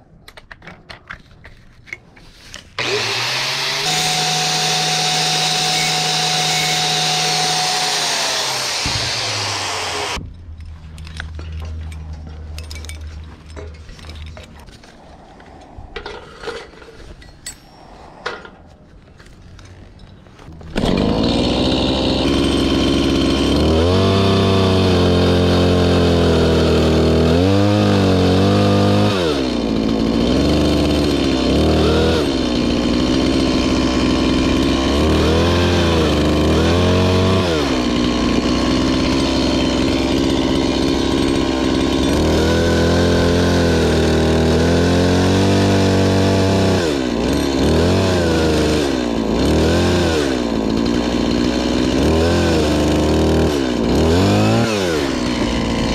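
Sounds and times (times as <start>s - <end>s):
chainsaw running hard: 2.8s - 10.2s, 20.6s - 55.9s.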